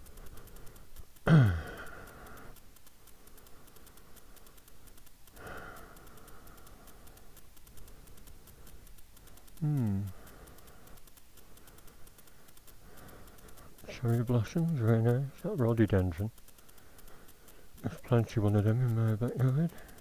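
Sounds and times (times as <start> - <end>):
faint rapid ticking: 0.0 - 20.0
person making wordless vocal sounds: 1.3 - 1.9, 9.6 - 10.2.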